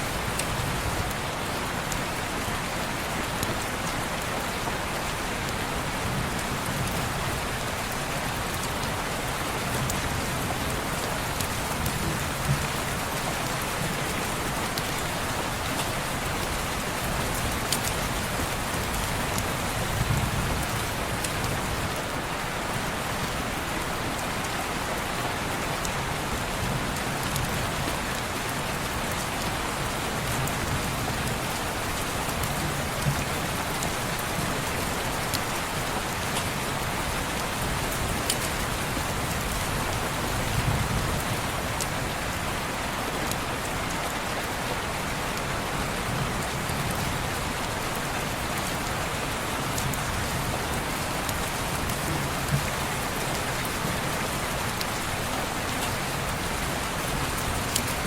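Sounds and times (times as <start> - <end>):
rain on a window: 0.0 - 58.0
sharp rain ticks: 0.0 - 58.0.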